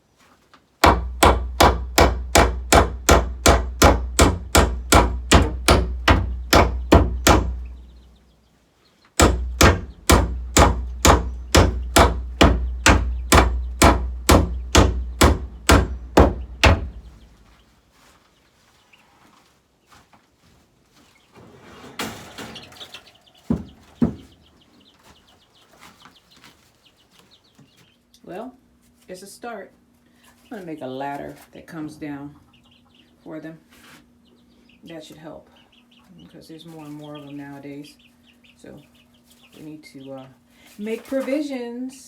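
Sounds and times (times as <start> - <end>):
hammer striking wood: 0.8 - 7.8, 9.2 - 17.2.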